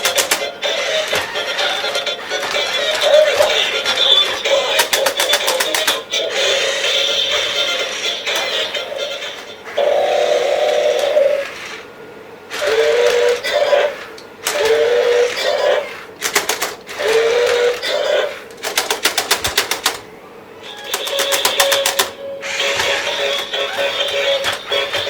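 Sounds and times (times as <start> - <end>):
rapid rattling clicks: 0.0 - 6.1, 16.2 - 17.8, 18.5 - 20.1, 20.8 - 25.0
electronic toy growling: 0.0 - 11.9, 12.5 - 16.1, 16.9 - 18.5, 22.4 - 25.0.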